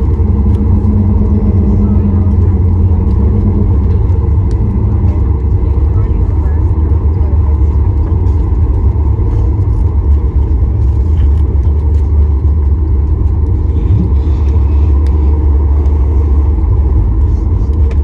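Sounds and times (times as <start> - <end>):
airliner cabin rumble: 0.0 - 18.0.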